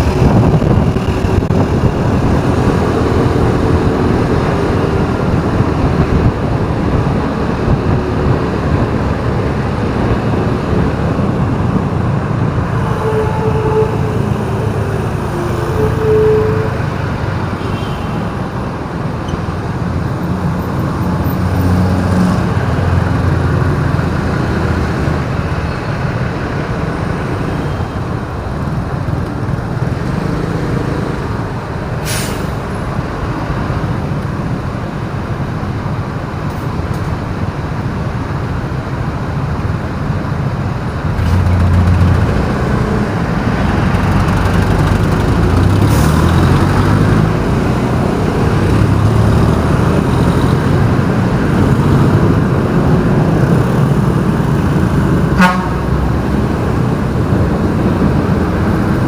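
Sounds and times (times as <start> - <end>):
city street traffic: 0.0 - 59.0
brief sharp hiss: 32.0 - 32.6.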